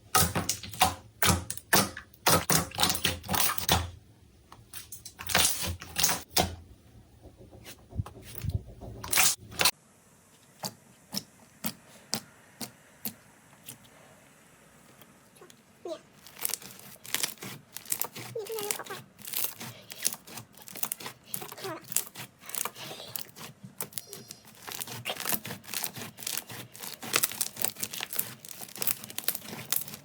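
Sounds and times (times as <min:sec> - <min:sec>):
slime crackling and popping: 0:16.2 - 0:30.0.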